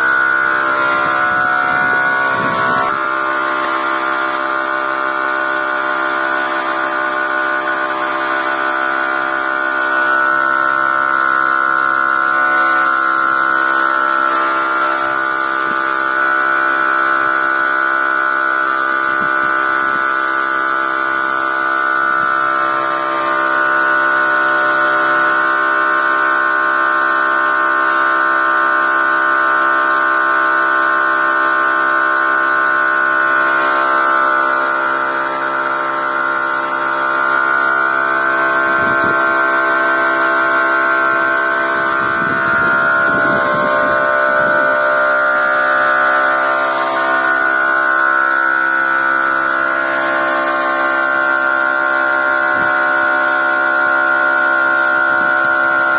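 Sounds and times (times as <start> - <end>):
electric spray gun motor whine: 0.0 - 55.9.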